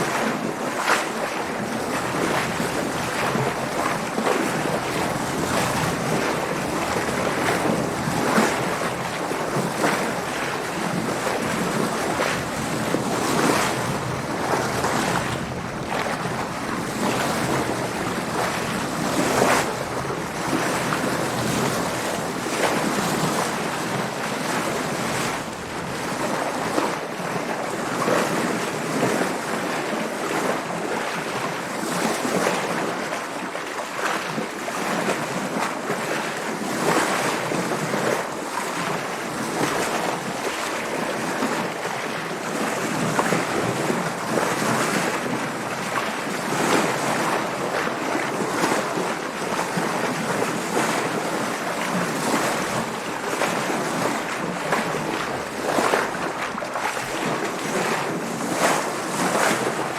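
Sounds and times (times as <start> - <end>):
water splashing against boat hull: 0.0 - 59.9
wind: 0.0 - 59.9.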